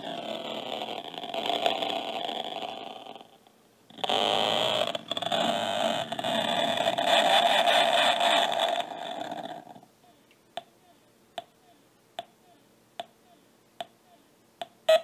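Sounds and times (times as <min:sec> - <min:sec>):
buzzy distorted toy noise: 0:00.0 - 0:09.9.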